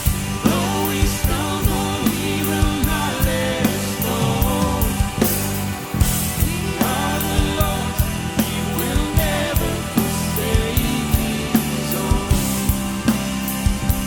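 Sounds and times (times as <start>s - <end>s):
person singing: 0.0s - 5.4s, 6.3s - 13.1s
bass and guitar: 0.0s - 14.0s
drum beat: 0.0s - 14.0s.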